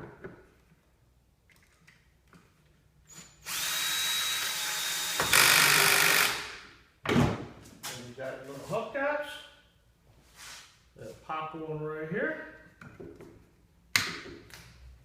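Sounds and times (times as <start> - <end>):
electric screw gun running: 3.4 - 6.5.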